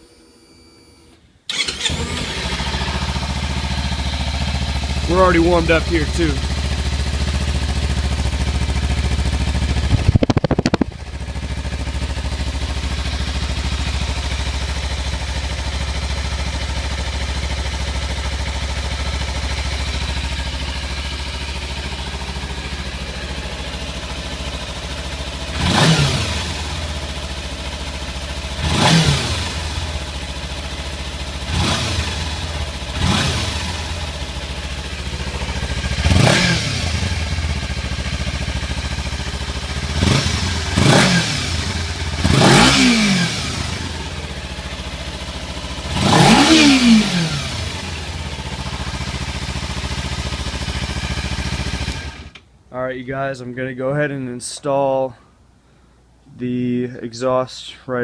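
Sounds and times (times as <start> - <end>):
engine throttle blips: 1.5 - 14.3, 31.1 - 49.7
motorcycle engine idling: 1.5 - 52.4.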